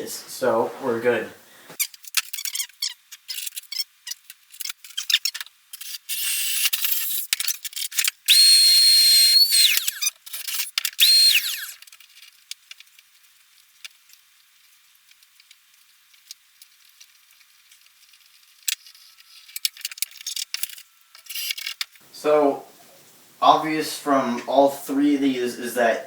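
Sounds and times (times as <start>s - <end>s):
handheld power tool motor whining: 7.9s - 11.9s.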